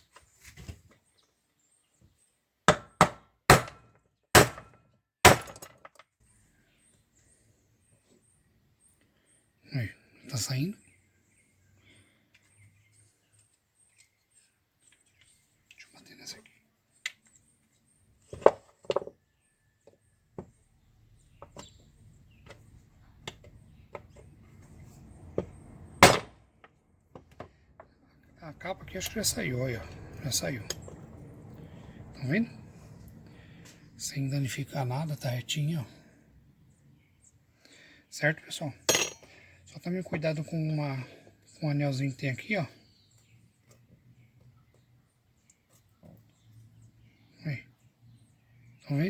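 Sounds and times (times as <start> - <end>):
hammer striking metal pin: 38.9 - 39.3.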